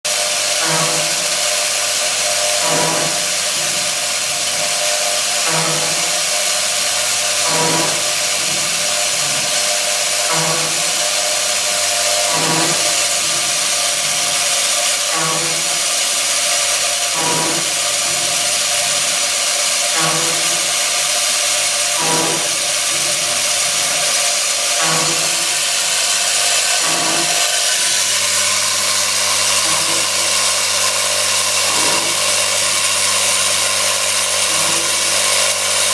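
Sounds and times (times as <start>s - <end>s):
milling machine whine and hiss: 0.1s - 35.9s
low machine knock: 0.6s - 1.4s, 2.6s - 6.4s, 7.3s - 11.2s, 12.1s - 14.5s, 15.1s - 15.8s, 17.1s - 19.2s, 20.0s - 20.8s, 22.0s - 24.1s, 24.8s - 25.7s, 26.8s - 32.9s, 34.4s - 35.5s.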